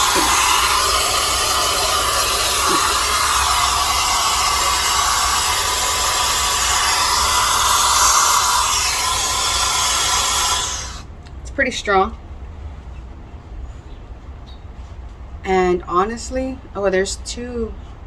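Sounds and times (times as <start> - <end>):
hair dryer blowing air: 0.0 - 11.0.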